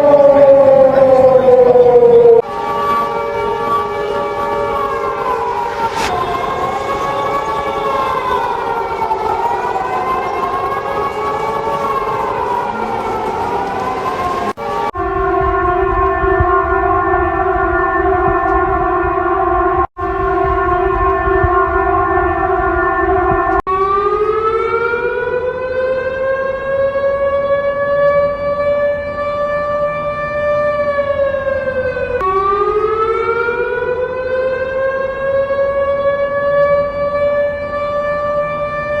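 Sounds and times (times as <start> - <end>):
siren winding up and down: 0.0 - 26.0
steady siren tone: 0.0 - 39.0.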